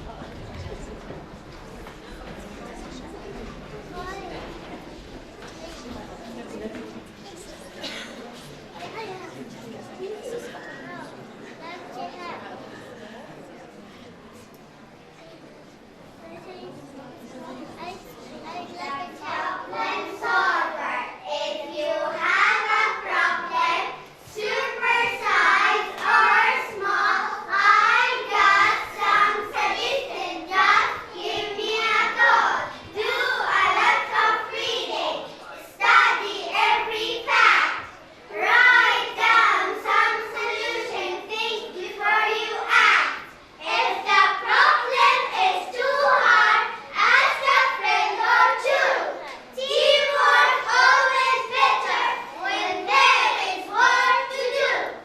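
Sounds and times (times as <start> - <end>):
children singing: 19.2 - 55.0.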